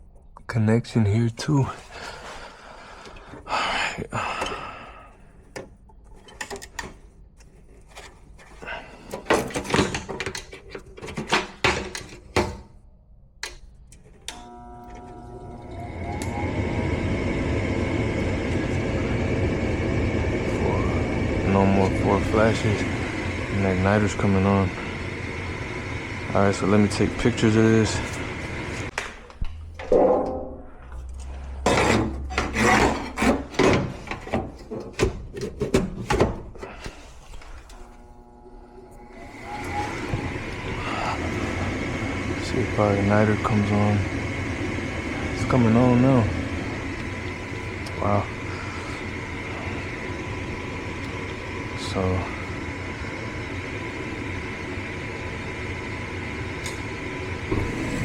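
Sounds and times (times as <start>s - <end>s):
furnace motor humming: 1.4s - 12.8s, 13.4s - 29.9s, 36.5s - 58.0s
rubbing and scraping: 31.6s - 34.8s.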